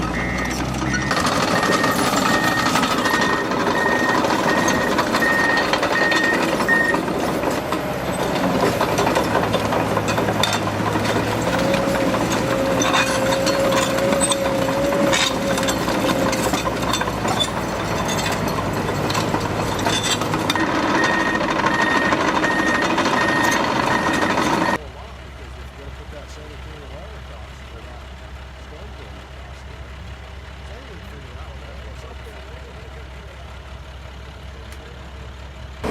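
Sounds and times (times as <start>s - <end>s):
reversing alarm beeping: 0.0s - 24.8s
heavy machinery engine running: 0.0s - 35.9s.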